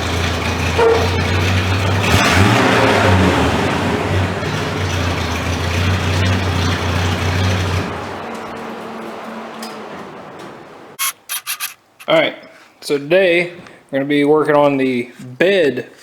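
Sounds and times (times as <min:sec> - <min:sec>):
vehicle engine hum: 0:00.0 - 0:11.8.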